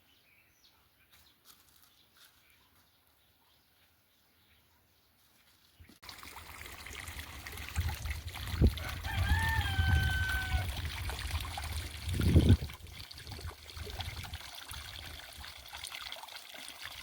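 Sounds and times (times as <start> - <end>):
water trickling: 5.8 - 17.0
rooster crowing: 8.8 - 10.8.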